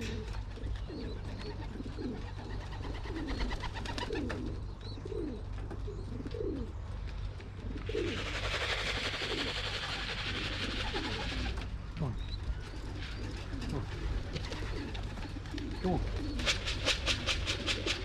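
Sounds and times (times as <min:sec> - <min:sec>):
pigeons cooing: 0:00.0 - 0:18.0.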